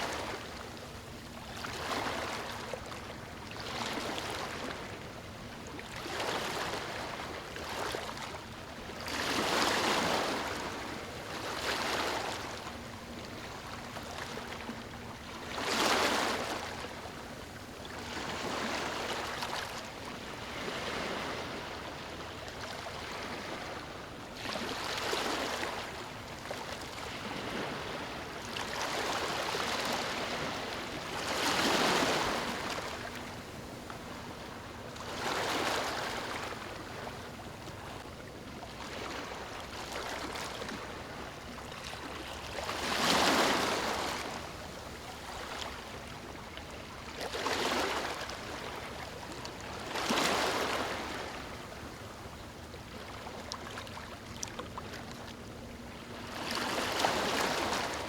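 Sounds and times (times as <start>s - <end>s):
small waves lapping on beach: 0.0s - 58.0s.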